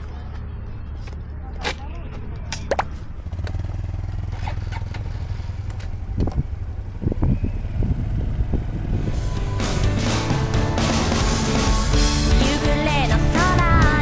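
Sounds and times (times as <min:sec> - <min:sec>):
motorcycle engine running: 0:03.1 - 0:14.0.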